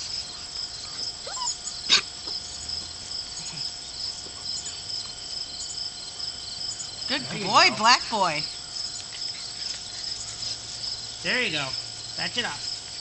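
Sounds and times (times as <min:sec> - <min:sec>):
insects chirping: 0:00.0 - 0:13.0
puppy whimpering and yipping: 0:00.9 - 0:02.1.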